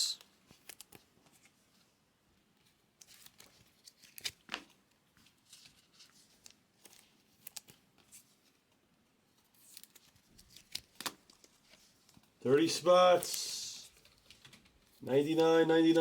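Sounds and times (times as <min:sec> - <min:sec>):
cards sliding into plastic sleeves: 0:09.6 - 0:14.7.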